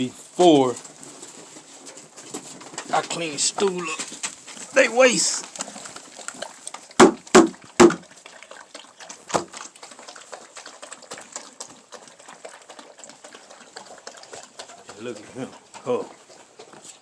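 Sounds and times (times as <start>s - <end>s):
wet dog food lapping: 0.2s - 17.0s
sharp knocks: 7.0s - 8.0s.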